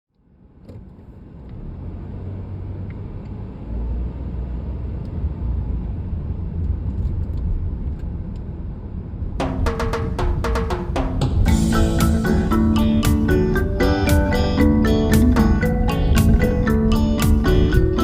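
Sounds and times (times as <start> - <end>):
car road and engine rumble: 0.1 - 18.0
drum-led music: 9.4 - 18.0.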